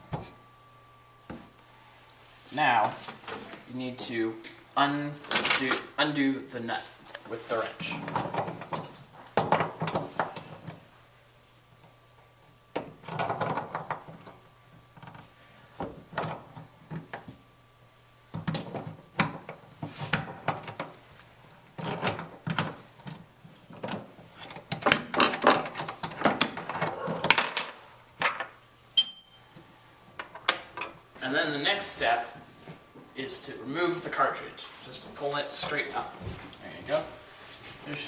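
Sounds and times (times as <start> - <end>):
high squeak: 29.0 - 29.5.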